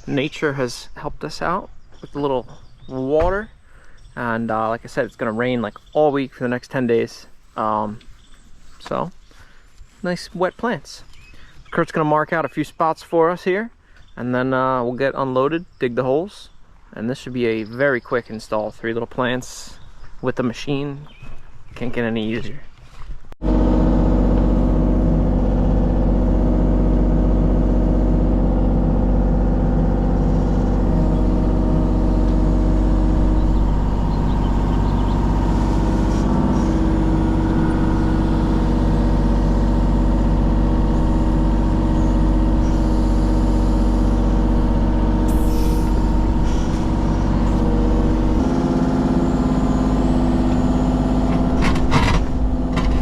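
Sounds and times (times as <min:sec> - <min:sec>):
excavator diesel engine running: 0:23.4 - 0:53.0.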